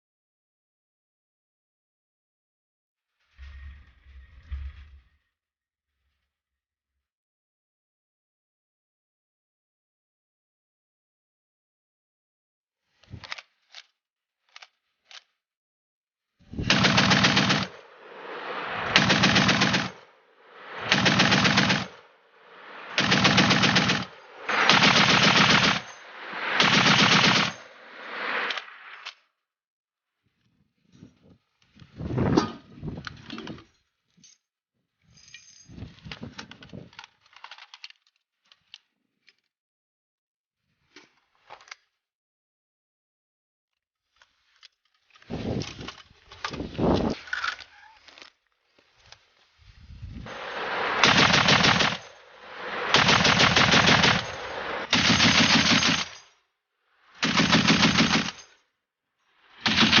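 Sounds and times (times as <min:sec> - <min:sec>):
machine gun firing bursts: 0:16.6 - 0:17.8, 0:18.9 - 0:20.0, 0:20.8 - 0:22.0, 0:22.8 - 0:27.6, 0:50.6 - 0:56.3, 0:57.2 - 0:58.5, 0:59.6 - 1:00.0.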